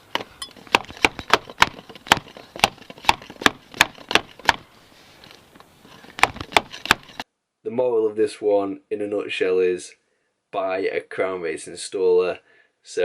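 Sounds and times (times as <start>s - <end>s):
sharp knocks on plastic pipe: 0.7s - 4.6s.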